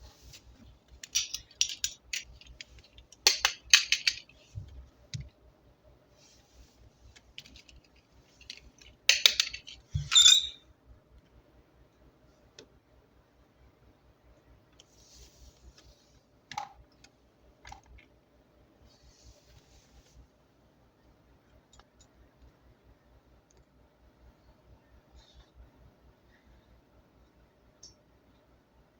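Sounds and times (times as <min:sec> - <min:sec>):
plastic toys clicking: 0:01.0 - 0:04.4, 0:07.4 - 0:09.9.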